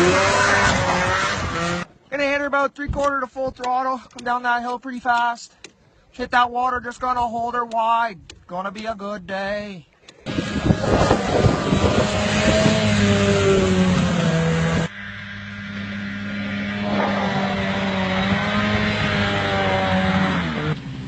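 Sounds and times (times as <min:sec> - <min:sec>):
snowmobile engine at high throttle: 0:00.0 - 0:01.9, 0:10.2 - 0:21.0.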